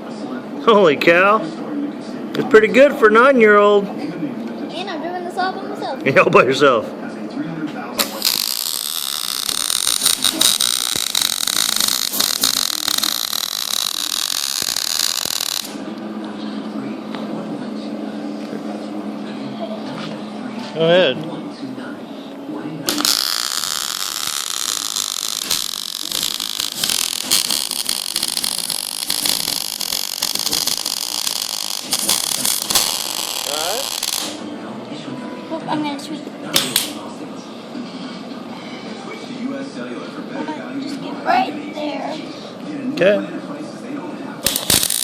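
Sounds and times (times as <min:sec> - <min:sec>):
welding arc crackling hiss: 0:08.0 - 0:15.8, 0:22.9 - 0:34.4, 0:44.4 - 0:45.0
sharp pops: 0:22.9 - 0:33.3, 0:44.4 - 0:45.0.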